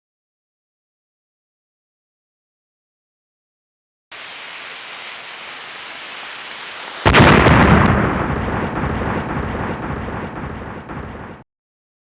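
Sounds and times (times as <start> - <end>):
steady hiss: 4.1 - 7.1
loud rumbling boom: 6.7 - 11.4.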